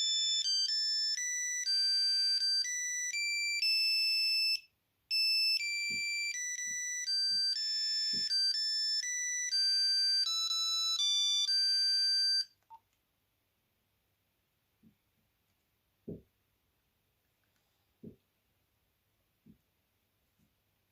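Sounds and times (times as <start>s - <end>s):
monophonic ringtone melody: 0.0s - 12.5s.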